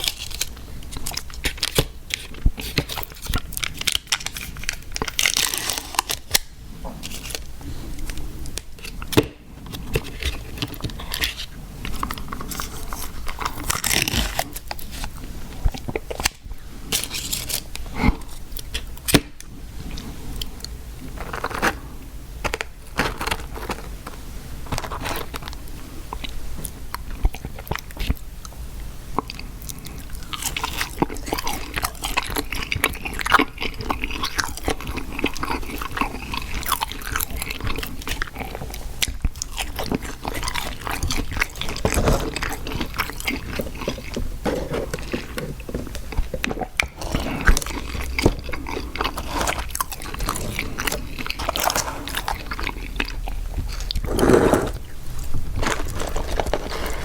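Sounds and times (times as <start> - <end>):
chewing with crunchy bites: 0.0 - 57.0.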